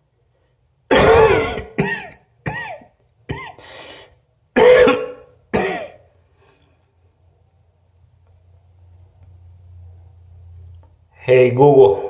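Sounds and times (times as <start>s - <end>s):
person coughing: 0.9s - 3.6s, 4.6s - 6.0s.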